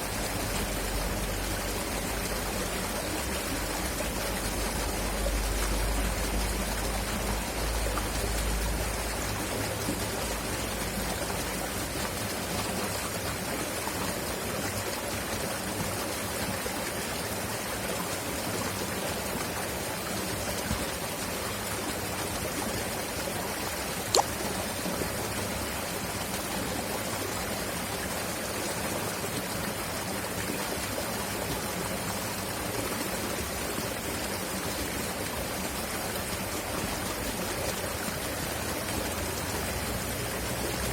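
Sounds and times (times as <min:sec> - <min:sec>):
river water rushing: 0:00.0 - 0:40.9
sharp click: 0:24.1 - 0:24.3.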